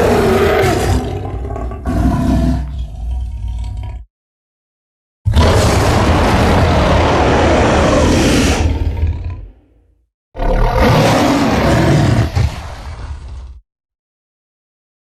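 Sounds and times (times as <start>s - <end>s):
monster roars: 0.0s - 4.0s, 5.3s - 9.8s, 10.4s - 13.6s.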